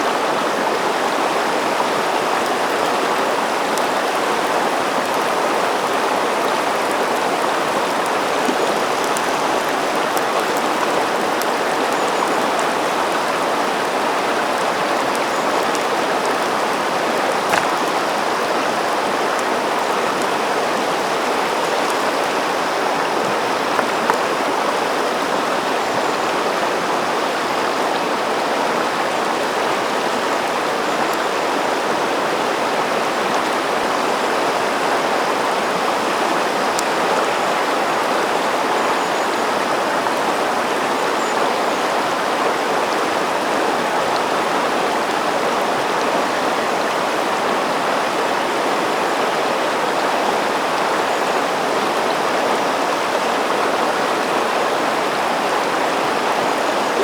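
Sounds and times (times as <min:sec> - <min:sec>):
river rushing over stones: 0:00.0 - 0:57.0.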